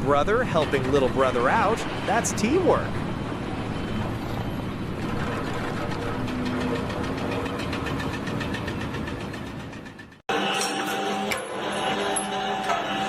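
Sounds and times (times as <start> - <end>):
heavy engine knocking: 4.8 - 10.2
music: 10.3 - 13.0.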